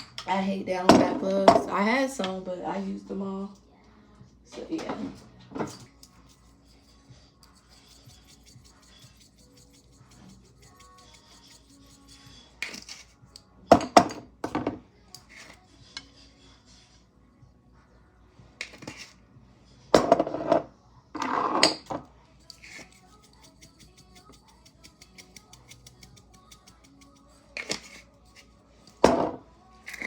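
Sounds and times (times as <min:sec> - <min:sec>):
quiet background music: 0:00.0 - 0:30.0.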